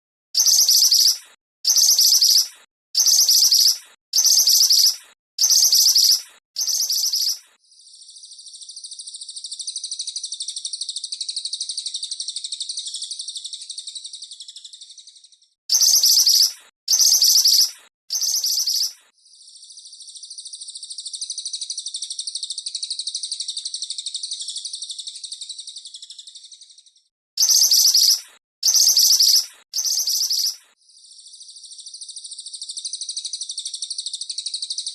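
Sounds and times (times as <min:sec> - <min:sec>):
short high bird chirps: 0:00.4 - 0:08.6, 0:15.7 - 0:19.1, 0:27.4 - 0:30.8.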